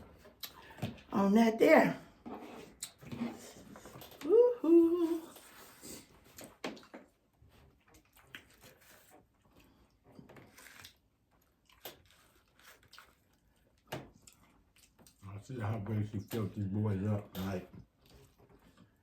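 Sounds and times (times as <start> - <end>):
chewing crunchy tacos: 5.3 - 19.0.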